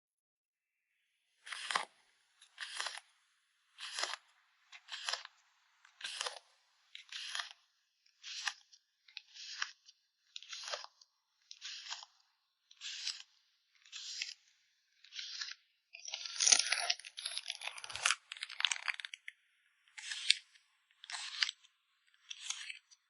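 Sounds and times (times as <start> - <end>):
packing materials crunching: 16.2 - 19.3.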